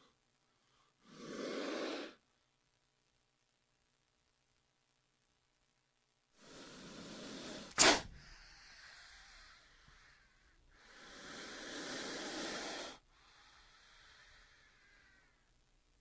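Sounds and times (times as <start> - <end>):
giant snake hissing: 1.0 - 2.2, 6.4 - 10.2, 10.8 - 15.2
sharp loud snap: 7.7 - 8.2.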